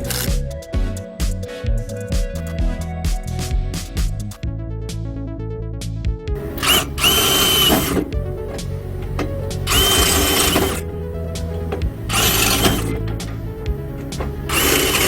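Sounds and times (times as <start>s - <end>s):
background music: 0.0s - 15.0s
power drill whining: 6.4s - 10.9s, 11.5s - 15.0s.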